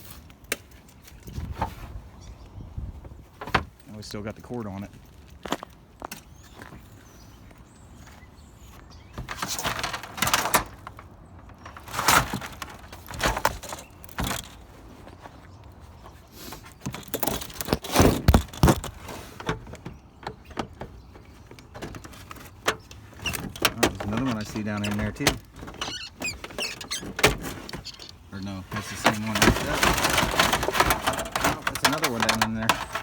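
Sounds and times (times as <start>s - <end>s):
objects knocking and rattling: 9.2s - 14.8s, 16.8s - 33.0s.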